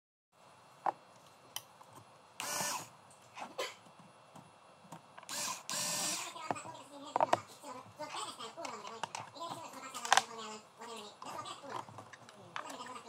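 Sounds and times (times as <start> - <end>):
cordless drill whirring: 2.4 - 2.9, 5.2 - 6.4.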